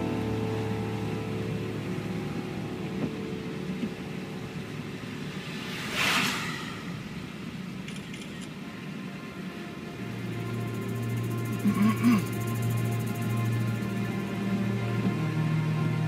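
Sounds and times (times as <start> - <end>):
car road and engine noise: 0.0 - 16.0
brief whoosh: 4.9 - 8.5.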